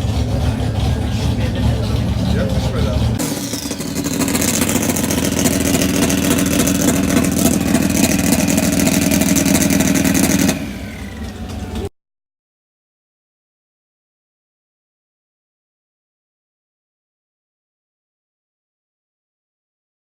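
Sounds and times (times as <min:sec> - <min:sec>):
racing car engine at full throttle: 0:00.0 - 0:11.9.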